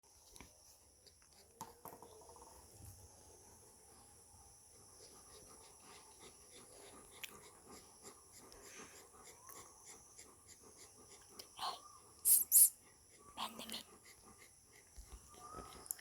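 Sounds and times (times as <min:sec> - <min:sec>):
dog breathing faintly: 0:03.5 - 0:16.0.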